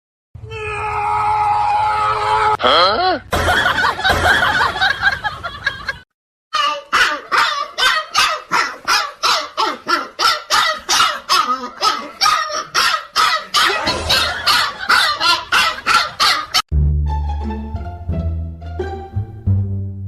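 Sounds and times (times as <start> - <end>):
dog barking rapidly: 6.9 - 16.6.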